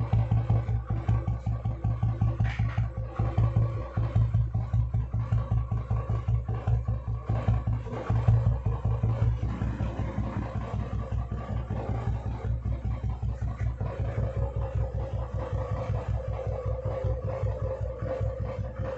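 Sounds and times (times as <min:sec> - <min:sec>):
motorcycle engine idling: 0:00.0 - 0:18.9.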